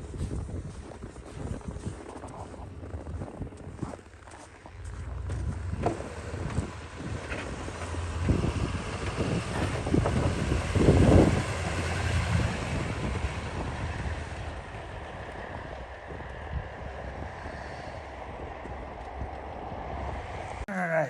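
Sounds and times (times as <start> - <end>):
engine rumbling: 0.0 - 16.1
wind buffeting microphone: 0.0 - 20.6.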